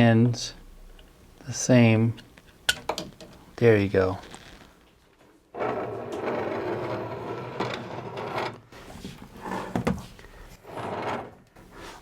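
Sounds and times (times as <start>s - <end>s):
metal case scraping and rattling: 5.6s - 11.4s.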